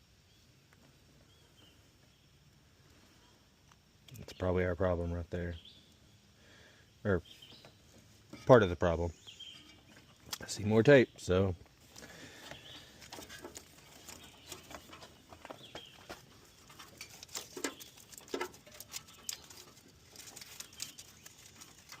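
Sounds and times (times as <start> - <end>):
tape peeling crackles and clicks: 16.2 - 22.0.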